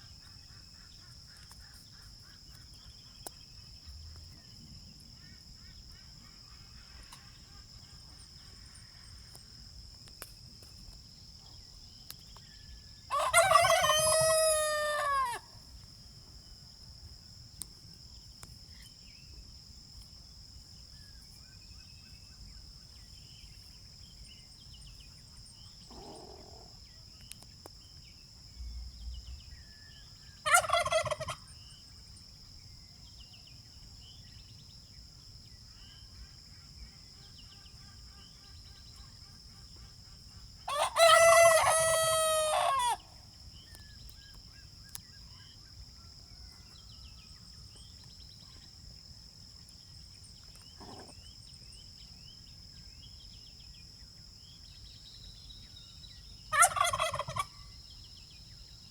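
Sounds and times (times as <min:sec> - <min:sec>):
high insect drone: 0:00.0 - 0:58.9
turkey gobbling: 0:13.1 - 0:15.4, 0:30.4 - 0:31.4, 0:40.7 - 0:43.0, 0:56.5 - 0:57.5
rooster crowing: 0:13.1 - 0:15.5, 0:40.7 - 0:43.0.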